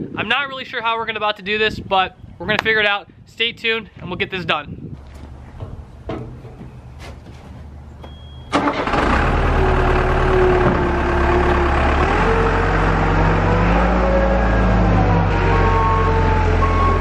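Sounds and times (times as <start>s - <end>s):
diesel engine starting and running: 5.0s - 17.0s.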